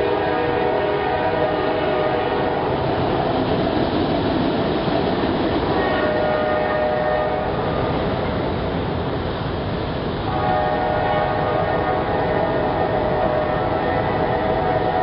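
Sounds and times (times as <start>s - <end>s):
locomotive air horn: 0.0s - 2.8s, 5.7s - 7.6s, 10.3s - 15.0s
freight train rolling past: 0.0s - 15.0s.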